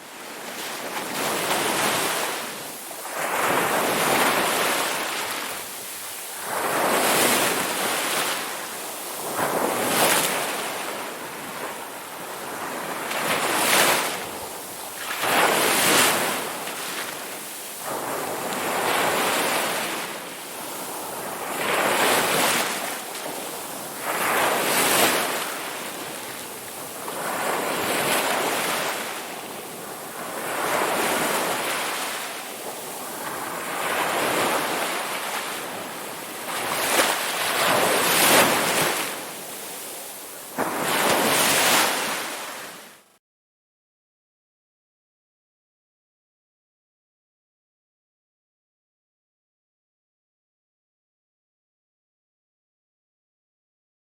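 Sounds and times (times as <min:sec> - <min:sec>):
ocean waves breaking: 0:00.0 - 0:43.0.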